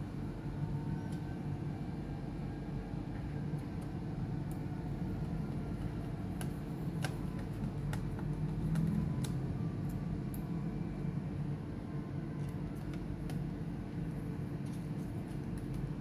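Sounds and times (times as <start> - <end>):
steady low hum: 0.0 - 16.0
small sharp clicks and taps: 5.7 - 10.5, 12.4 - 13.6.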